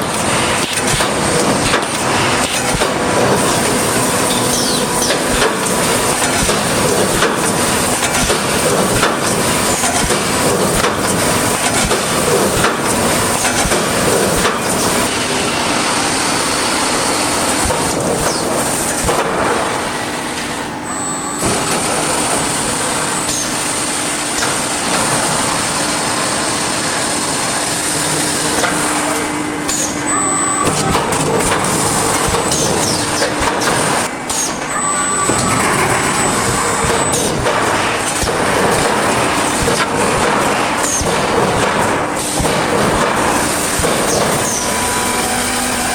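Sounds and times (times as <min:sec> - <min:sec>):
welding machine running: 0:00.0 - 0:45.9.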